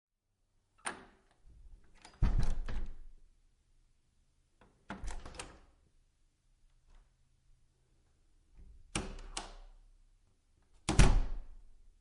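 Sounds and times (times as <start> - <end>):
door closing knock: 2.2 - 2.9
wooden door slamming shut: 2.2 - 3.1, 10.9 - 11.5
door latch click: 8.9 - 9.7.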